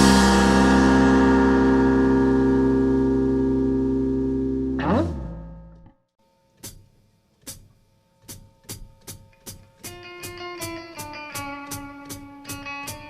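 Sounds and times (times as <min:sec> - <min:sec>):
held chord: 0:00.0 - 0:05.9
guitar notes: 0:00.0 - 0:06.0, 0:09.9 - 0:13.0
drum beat: 0:07.5 - 0:13.0.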